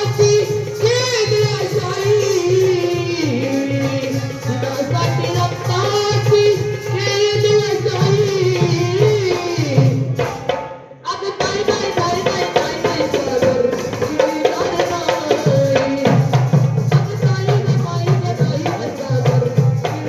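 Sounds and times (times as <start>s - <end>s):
other percussion: 0.0s - 20.0s
hand drum beat: 11.4s - 20.0s.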